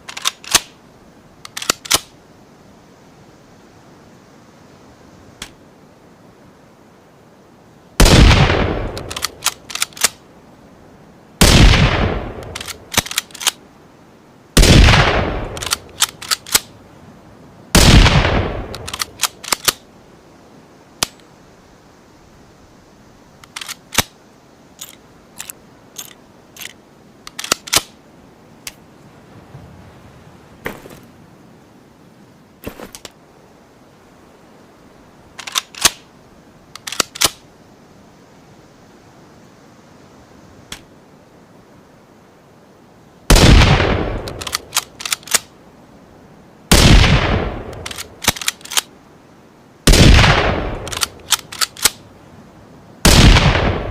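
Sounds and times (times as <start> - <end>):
rifle bolt clicks: 0.1 - 0.7, 1.4 - 2.1, 8.9 - 10.2, 12.4 - 13.6, 15.5 - 16.7, 18.7 - 19.8, 23.4 - 24.1, 24.8 - 28.0, 35.4 - 36.0, 36.8 - 37.4, 44.2 - 45.5, 47.7 - 48.9, 50.8 - 52.0
rifle gunshots with echo: 8.0 - 9.2, 11.4 - 12.7, 14.6 - 15.8, 17.8 - 19.1, 43.3 - 44.4, 46.7 - 48.0, 49.9 - 51.1, 53.0 - 53.9.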